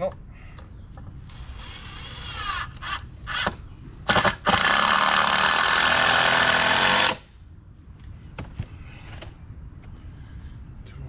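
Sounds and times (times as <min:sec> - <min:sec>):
power drill driving screw into wood: 0:01.3 - 0:07.3.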